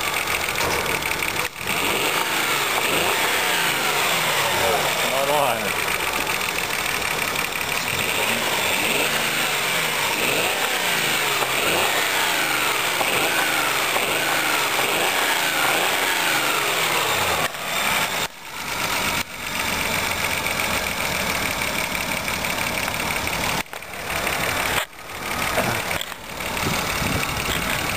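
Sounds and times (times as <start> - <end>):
engine idling: 0.0 - 27.9
engine knocking: 0.0 - 27.9.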